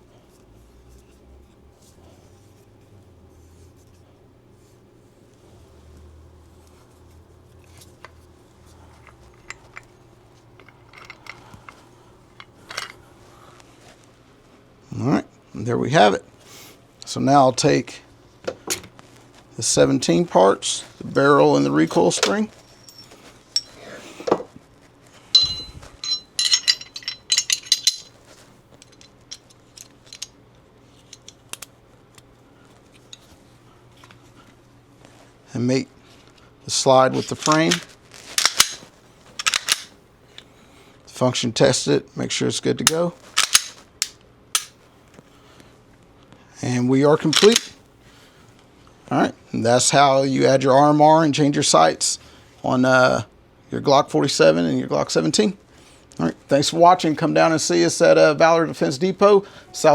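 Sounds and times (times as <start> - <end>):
metal gun parts clinking: 9.0 - 10.0, 10.6 - 11.5, 12.4 - 13.0, 22.2 - 23.8, 25.4 - 30.4, 37.4 - 40.4, 42.8 - 44.8, 47.2 - 47.8.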